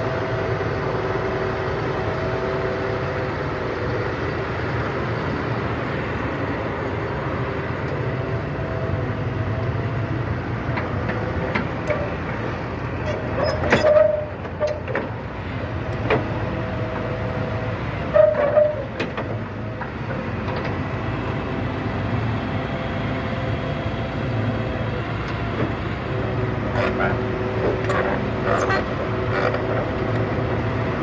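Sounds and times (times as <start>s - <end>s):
excavator diesel engine running: 0.0s - 31.0s
short metallic squeal: 13.1s - 14.3s, 18.1s - 18.8s, 27.8s - 29.8s.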